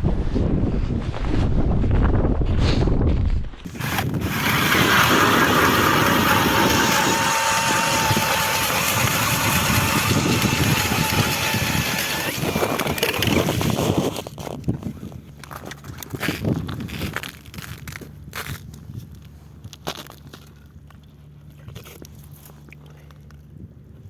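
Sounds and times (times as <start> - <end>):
small engine running: 3.7 - 14.0.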